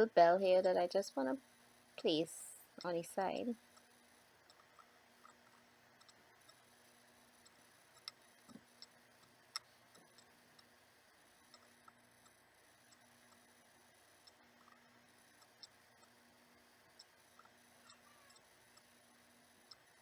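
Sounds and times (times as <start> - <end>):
faint clicks and light taps: 3.6 - 10.7, 14.2 - 20.0.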